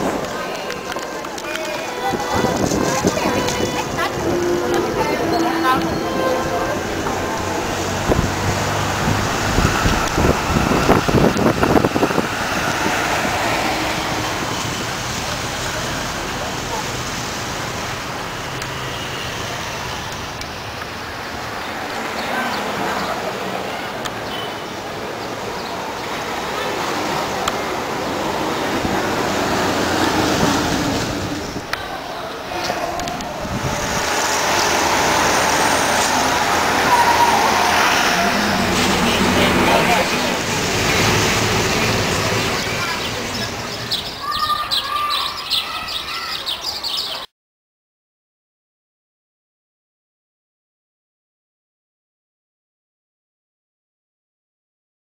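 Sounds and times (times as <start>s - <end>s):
steady rushing ambient noise: 0.0s - 18.7s, 19.5s - 44.0s.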